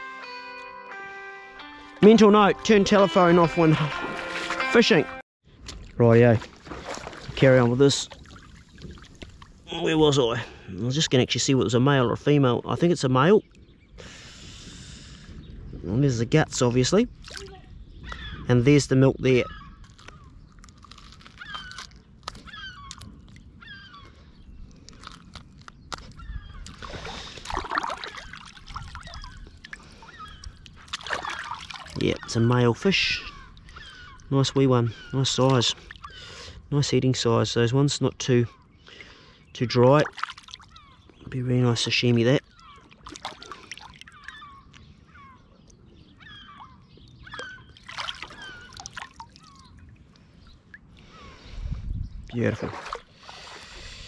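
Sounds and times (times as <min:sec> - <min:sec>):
birds chirping: 0:01.6 - 0:05.2, 0:06.0 - 0:54.0
wet rustling: 0:06.3 - 0:09.7, 0:19.8 - 0:24.1, 0:24.7 - 0:32.5, 0:40.0 - 0:41.0, 0:42.4 - 0:44.5, 0:47.2 - 0:51.0.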